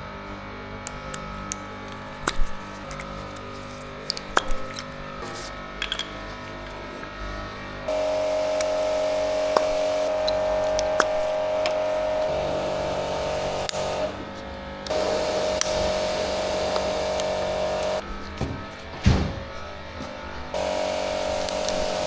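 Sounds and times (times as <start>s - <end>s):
power tool motor whining: 7.9s - 18.4s, 20.3s - 22.0s.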